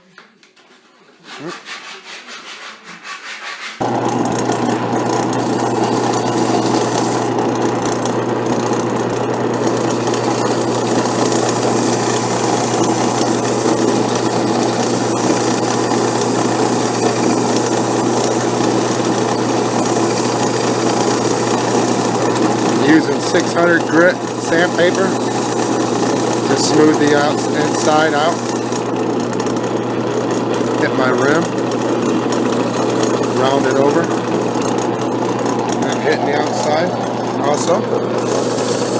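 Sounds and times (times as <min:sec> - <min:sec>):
wood lathe motor hum: 0:03.8 - 0:38.9.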